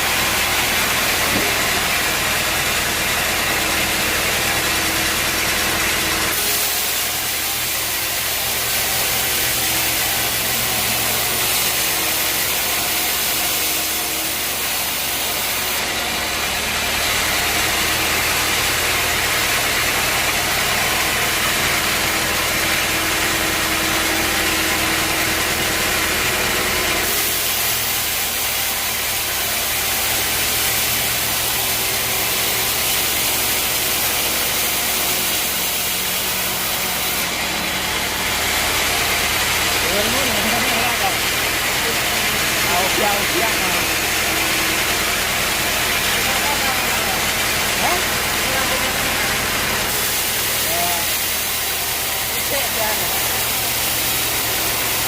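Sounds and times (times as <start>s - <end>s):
loud machinery hiss: 0.0s - 55.0s.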